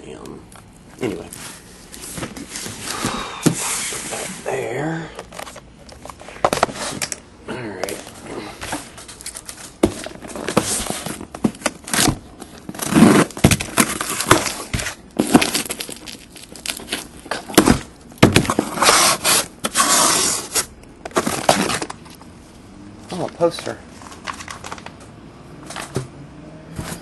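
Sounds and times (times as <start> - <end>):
cardboard crinkling and tearing: 8.7 - 22.2.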